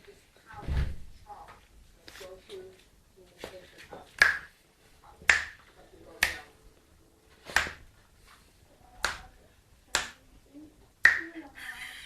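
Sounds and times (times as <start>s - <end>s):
fingers snapping: 4.2s - 4.6s, 5.3s - 5.6s, 6.2s - 6.4s, 7.5s - 7.8s, 9.0s - 9.3s, 9.9s - 10.2s, 11.0s - 11.3s.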